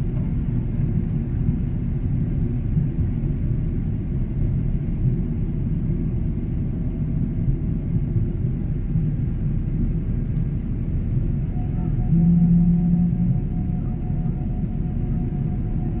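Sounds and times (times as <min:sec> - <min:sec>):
jet engines rumbling: 0:00.0 - 0:16.0.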